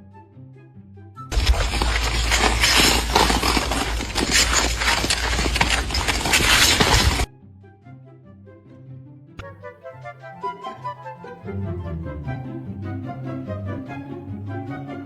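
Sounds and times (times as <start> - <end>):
rough noise with sharp cracks: 1.3 - 7.3.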